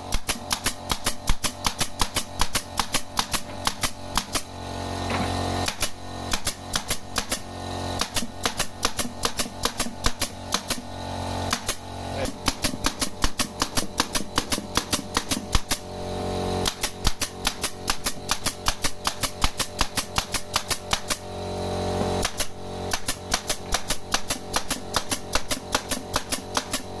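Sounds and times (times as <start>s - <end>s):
nail gun firing into wood: 0.0s - 15.9s, 16.6s - 21.3s, 22.0s - 27.0s.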